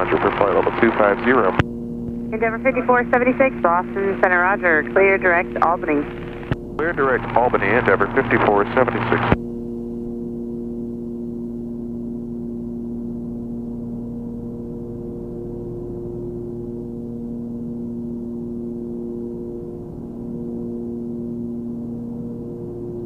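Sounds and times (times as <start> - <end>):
aircraft engines droning in cabin: 0.0 - 23.0.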